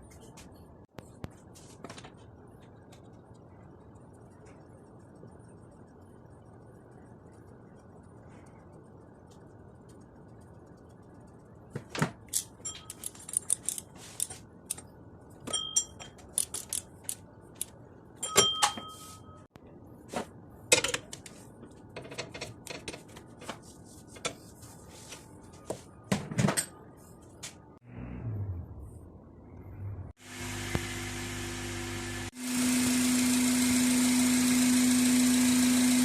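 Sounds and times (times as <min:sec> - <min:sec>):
metal tools clinking: 0:12.3 - 0:14.3.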